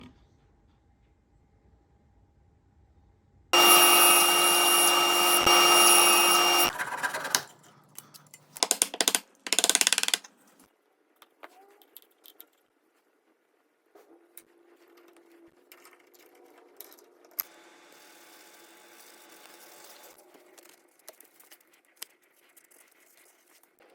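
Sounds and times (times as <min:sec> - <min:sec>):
power tool motor running: 0:03.6 - 0:06.7.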